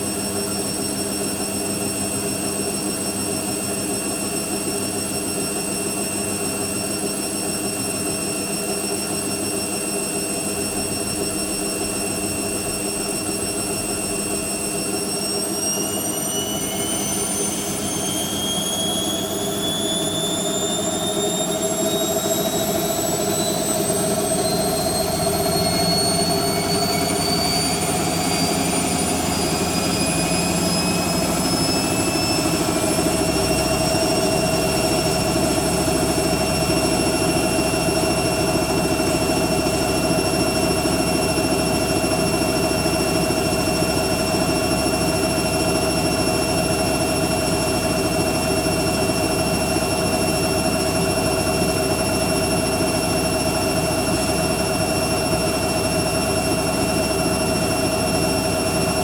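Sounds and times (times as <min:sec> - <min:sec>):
washing machine spinning up: 0:00.0 - 0:59.0.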